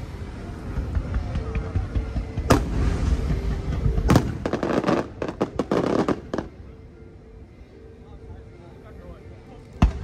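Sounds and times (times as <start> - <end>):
fireworks crackling: 0.0 - 6.6
firework bangs: 0.6 - 6.6.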